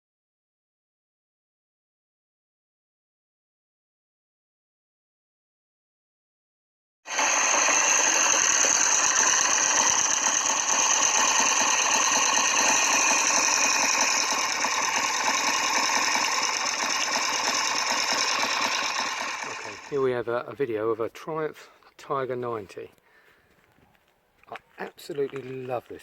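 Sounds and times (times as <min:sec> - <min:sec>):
motorcycle engine clattering: 0:07.1 - 0:20.0.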